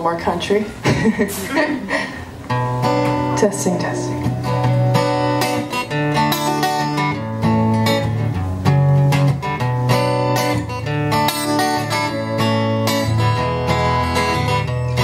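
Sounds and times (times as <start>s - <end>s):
acoustic guitar strumming chords: 2.4s - 15.0s.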